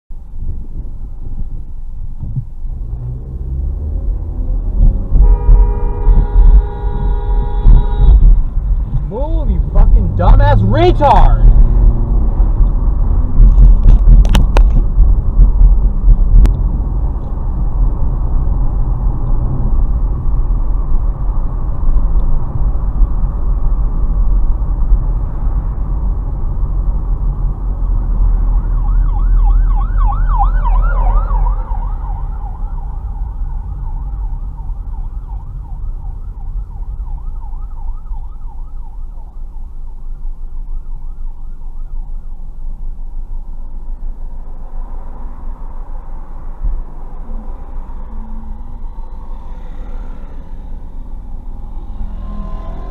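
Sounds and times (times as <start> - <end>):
vehicle road rumble: 0.1 - 52.9
emergency siren yelp: 28.4 - 42.8.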